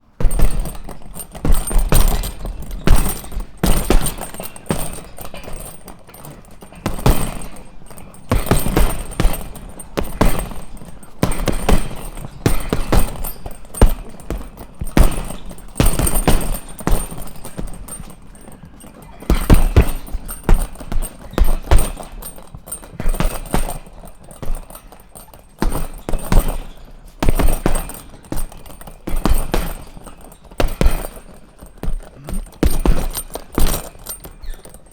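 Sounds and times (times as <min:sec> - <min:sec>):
punches thudding on punching bag: 0:00.1 - 0:34.9.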